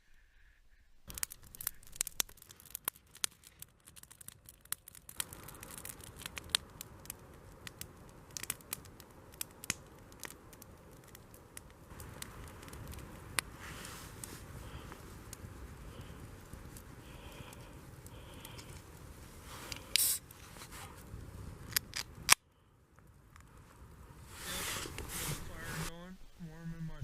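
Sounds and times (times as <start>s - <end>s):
campfire crackling: 0.0s - 27.0s
fire popping and snapping: 1.0s - 27.0s
steady hiss: 5.1s - 27.0s.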